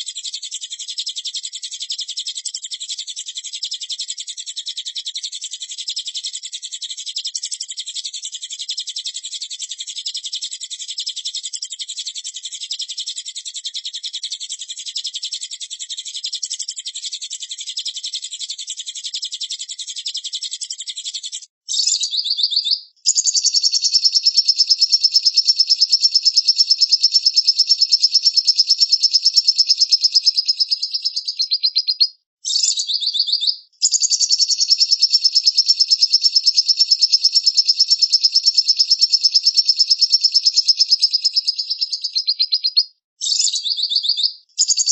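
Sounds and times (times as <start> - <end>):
fast high bird trill: 21.7 - 44.9.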